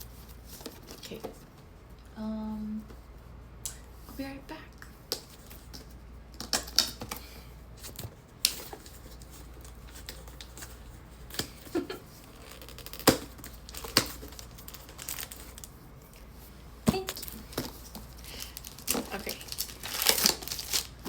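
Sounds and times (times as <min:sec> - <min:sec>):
packaging crinkling: 0:07.8 - 0:15.8, 0:17.0 - 0:21.0.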